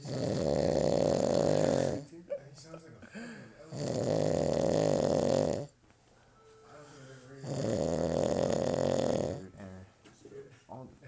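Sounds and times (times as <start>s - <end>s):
loud snoring: 0.0s - 2.1s, 3.7s - 5.8s, 7.4s - 9.5s
quiet breathing: 3.0s - 4.5s, 5.6s - 10.7s.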